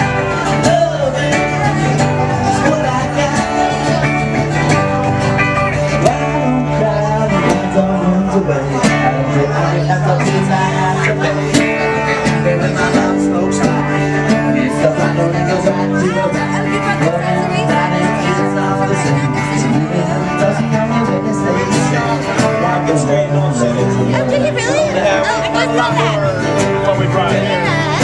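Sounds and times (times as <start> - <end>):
live country band with guitar: 0.0 - 28.0.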